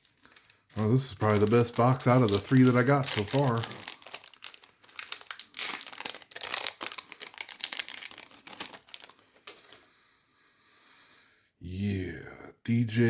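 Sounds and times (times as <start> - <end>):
foil wrapper crinkling: 0.0 - 9.8.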